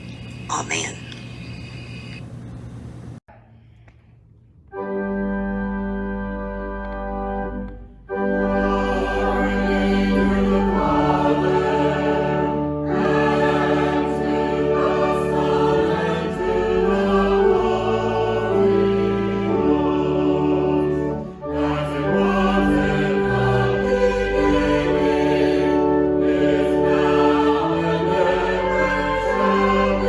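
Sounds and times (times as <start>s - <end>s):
organ chord: 4.7s - 30.0s
choir singing: 8.1s - 30.0s.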